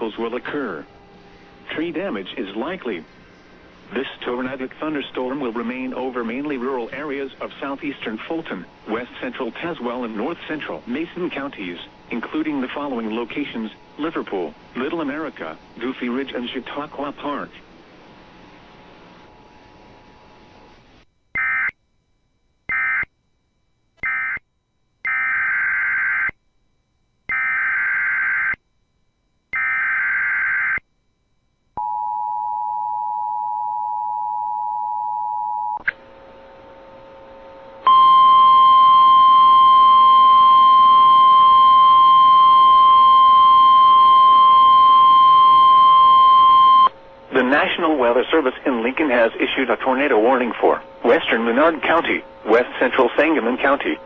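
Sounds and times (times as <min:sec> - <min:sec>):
receiver hiss: 0:00.0 - 0:21.1, 0:35.8 - 0:54.0
two-tone attention signal: 0:37.8 - 0:46.9
longer data bursts: 0:37.8 - 0:54.0.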